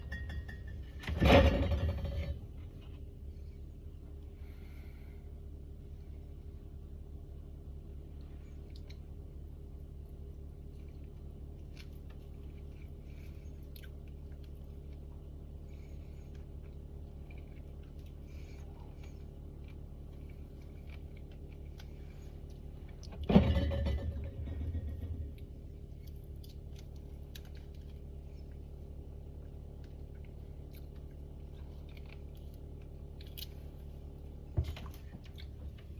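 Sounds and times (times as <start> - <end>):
rattling: 0.0 - 2.9, 23.0 - 25.6
refrigerator humming: 0.0 - 35.9.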